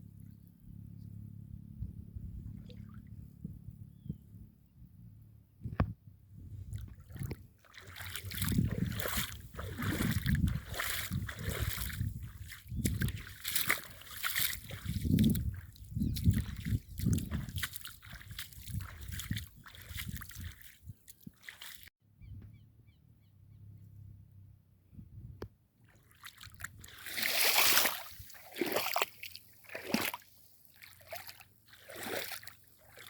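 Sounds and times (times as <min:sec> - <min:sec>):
footsteps splashing through water: 0:06.7 - 0:21.9, 0:25.9 - 0:33.0.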